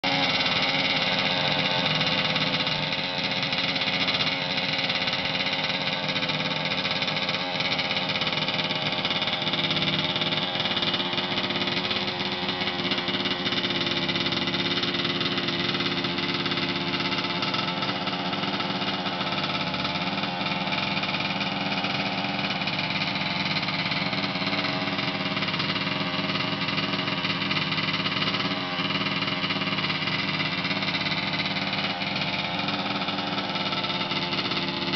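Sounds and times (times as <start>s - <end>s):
engine idling: 0.0s - 34.9s.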